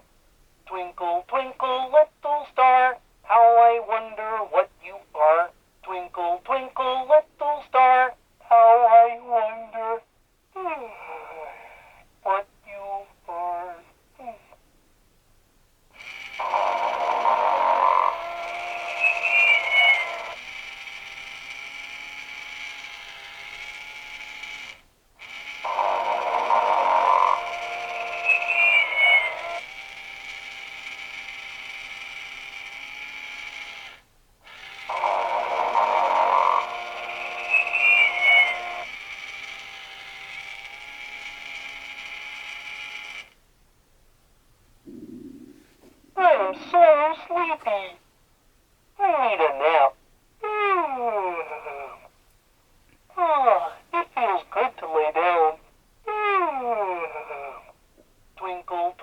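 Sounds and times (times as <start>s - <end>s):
quiet breathing: 10.7s - 12.2s, 44.8s - 46.8s
toy snoring through small speaker: 16.0s - 43.3s, 44.9s - 46.9s, 50.5s - 52.1s, 56.1s - 57.8s.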